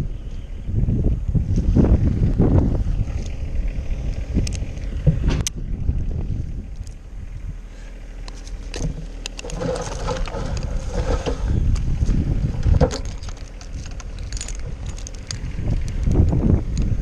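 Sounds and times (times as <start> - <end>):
wind buffeting microphone: 0.0 - 17.0
rustling: 8.3 - 16.0.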